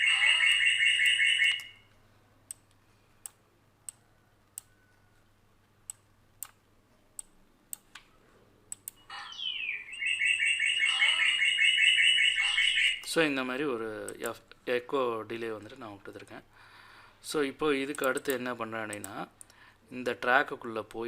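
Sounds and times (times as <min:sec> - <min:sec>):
low electrical hum: 0:00.0 - 0:21.0
computer mouse clicks: 0:02.5 - 0:04.7, 0:05.9 - 0:06.6, 0:07.2 - 0:08.1, 0:08.7 - 0:09.0
echoing bird call effect: 0:09.1 - 0:13.0.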